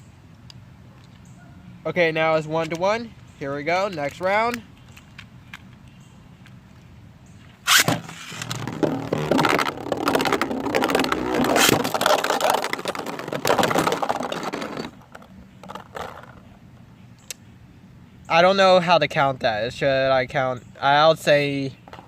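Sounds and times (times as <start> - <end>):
spinning top launcher ripping: 7.7 - 15.0.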